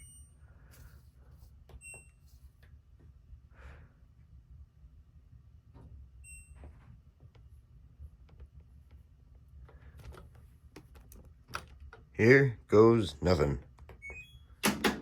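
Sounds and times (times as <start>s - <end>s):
washing machine beeps: 0.0s - 0.4s, 1.8s - 2.4s, 6.2s - 6.9s, 14.0s - 15.0s.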